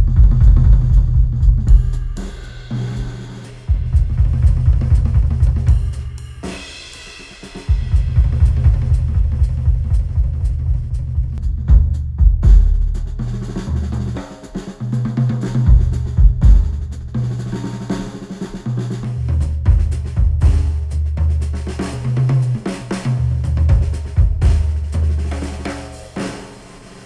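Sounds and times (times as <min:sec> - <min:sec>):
heavy bass: 0:00.0 - 0:06.9, 0:07.6 - 0:26.3
drum kit: 0:00.0 - 0:27.0.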